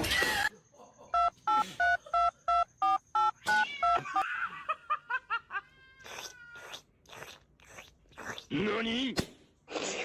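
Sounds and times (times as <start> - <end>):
two-tone electronic beeps: 1.1 - 4.0.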